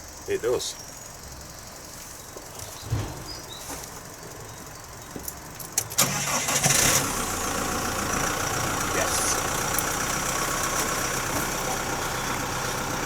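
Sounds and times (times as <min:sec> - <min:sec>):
diesel engine cranking and starting: 0:02.7 - 0:13.0
low thump: 0:02.8 - 0:03.8.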